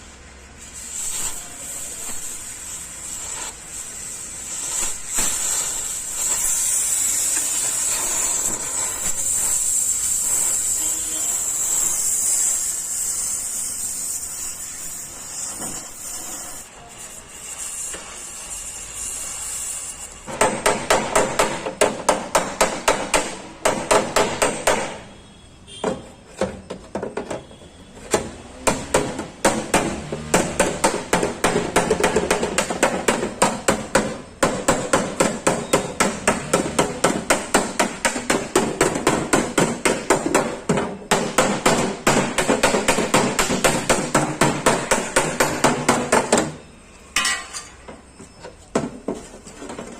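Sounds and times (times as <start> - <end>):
steady hiss: 0.0 - 20.3
hammer beating sheet steel: 1.0 - 25.1, 28.0 - 47.9.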